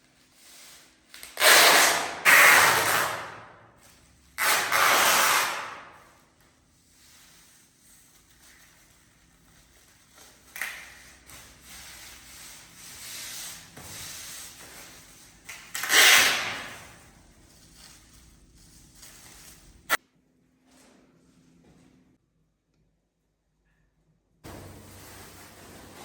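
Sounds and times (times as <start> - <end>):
hand rubbing and scraping surface: 6.7 - 20.0, 24.5 - 26.0.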